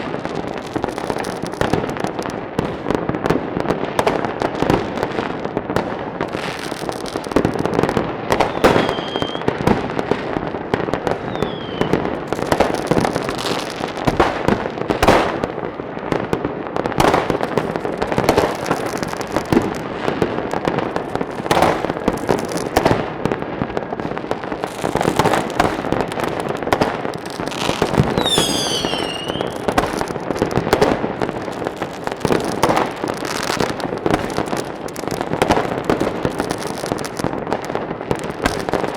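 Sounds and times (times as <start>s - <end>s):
fireworks crackling and banging: 0.0s - 38.9s
falling firework whistles: 8.3s - 9.6s, 11.2s - 12.2s, 27.6s - 29.9s.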